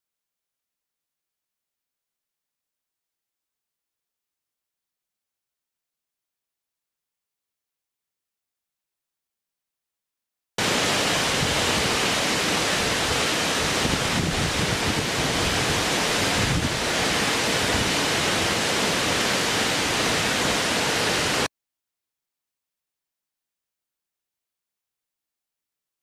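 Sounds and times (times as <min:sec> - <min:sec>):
steady rushing noise: 0:10.6 - 0:21.5.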